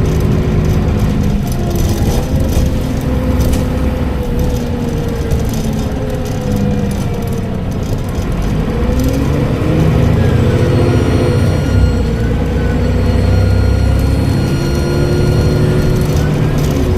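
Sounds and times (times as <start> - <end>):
bus diesel engine accelerating: 0.0 - 16.9
turbocharger whistle: 8.9 - 16.9.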